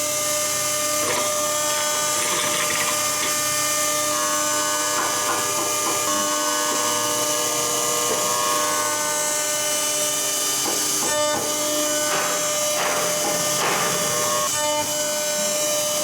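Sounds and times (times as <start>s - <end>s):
router machine whine: 0.0s - 16.0s
rough machine noise bursts: 0.5s - 3.8s.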